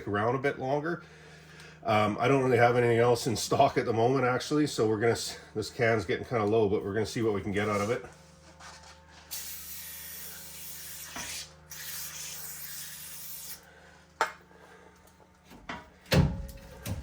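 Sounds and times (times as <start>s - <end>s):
aerosol can spraying: 9.3s - 13.6s.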